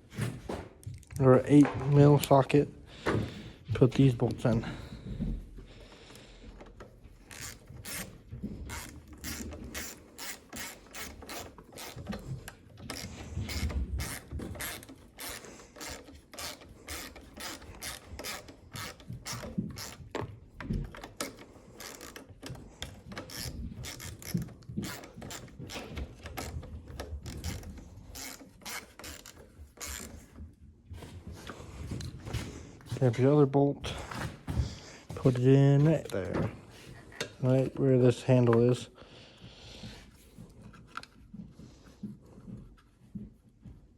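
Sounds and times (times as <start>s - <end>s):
hand ratchet clicking: 6.1s - 30.4s.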